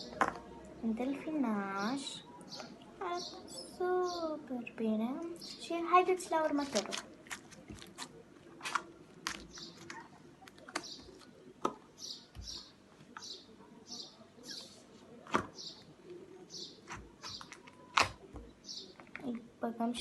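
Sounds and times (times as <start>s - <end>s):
plastic tubs clicking and tapping: 0.0s - 0.6s, 6.6s - 13.3s, 16.9s - 19.4s.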